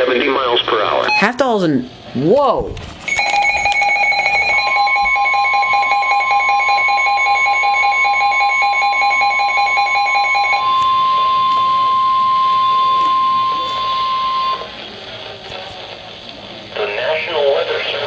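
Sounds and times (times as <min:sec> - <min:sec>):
rapid two-pitch beeping: 0:01.0 - 0:01.4, 0:03.1 - 0:14.7
steady alarm tone: 0:03.1 - 0:14.8.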